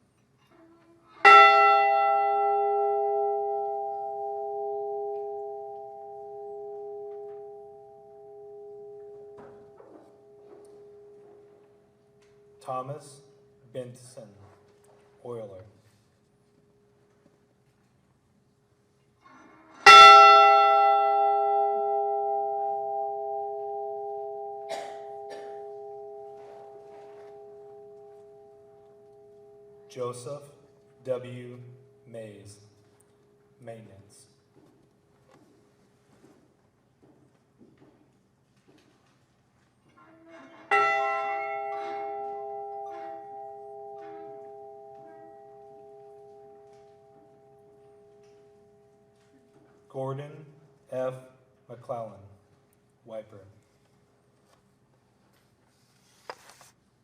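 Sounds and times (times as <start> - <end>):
bell ringing: 1.2 - 11.2, 19.8 - 30.0, 40.7 - 48.9.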